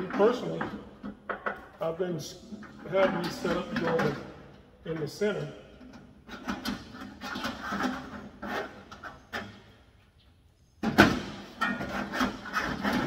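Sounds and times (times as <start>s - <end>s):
metal shelf scraping and clattering: 2.6s - 4.2s, 6.2s - 9.6s, 10.9s - 13.0s.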